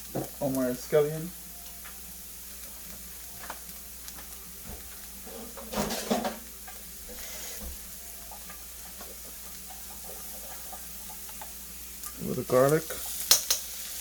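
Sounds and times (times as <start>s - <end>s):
vegetables sizzling in hot oil: 0.0s - 14.0s
utensil clicking in pan: 8.3s - 14.0s.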